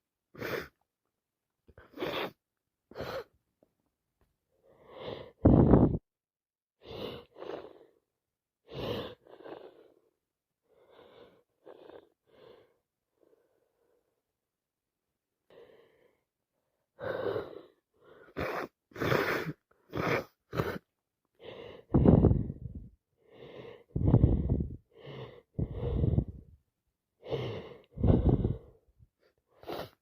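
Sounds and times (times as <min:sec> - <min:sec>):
person sneezing: 0:18.3 - 0:20.8
short in-breath: 0:21.4 - 0:26.6, 0:27.2 - 0:28.8.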